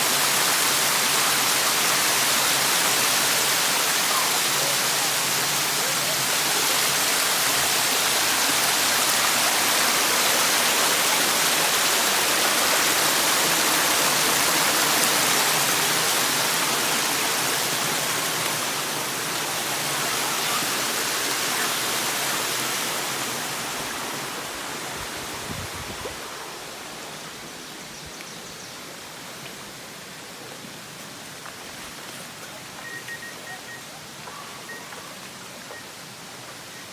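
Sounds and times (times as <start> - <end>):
waterfall rushing: 0.0 - 27.9.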